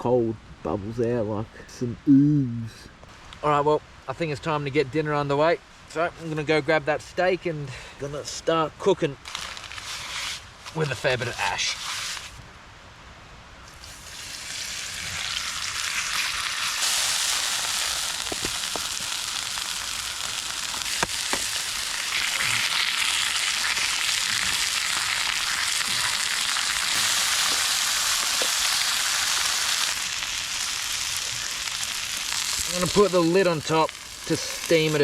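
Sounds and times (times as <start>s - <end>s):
steak sizzling: 13.7s - 35.0s
sharp pops: 16.1s - 30.7s.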